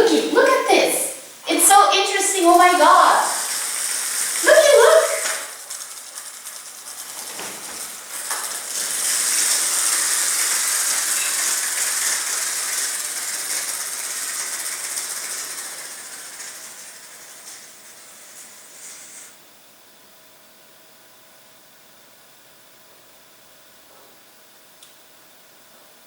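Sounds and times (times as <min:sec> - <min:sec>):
clockwork toy motor whirring: 0:01.5 - 0:19.4.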